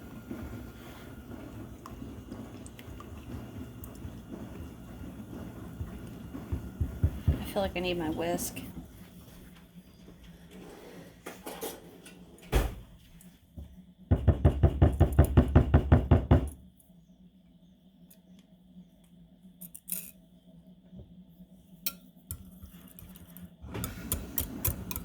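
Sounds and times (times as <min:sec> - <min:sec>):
whisk beating in a bowl: 0:00.0 - 0:08.6.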